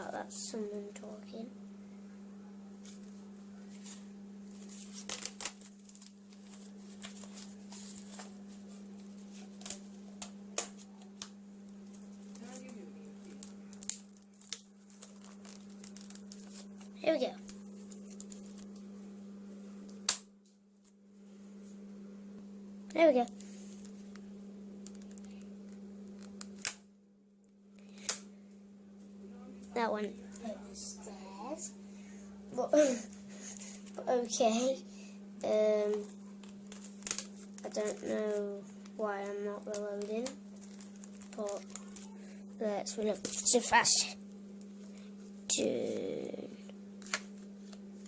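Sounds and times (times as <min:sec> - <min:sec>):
steady low hum: 0:00.0 - 0:48.0
paper rustling and clicks: 0:02.8 - 0:18.8, 0:24.8 - 0:25.5, 0:26.1 - 0:26.8, 0:35.9 - 0:38.4, 0:39.2 - 0:42.1, 0:47.0 - 0:47.8.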